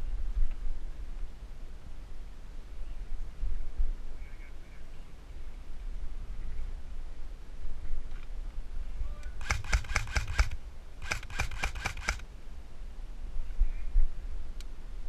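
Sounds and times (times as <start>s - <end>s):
airsoft rifle firing: 9.3s - 12.3s.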